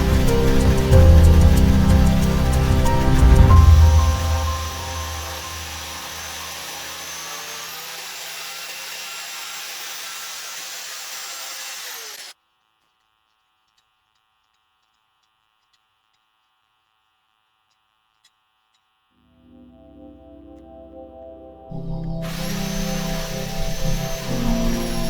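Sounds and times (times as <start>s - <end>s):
electric chainsaw cutting log: 0.0s - 12.4s, 21.8s - 25.0s
faint ticks: 12.6s - 19.0s.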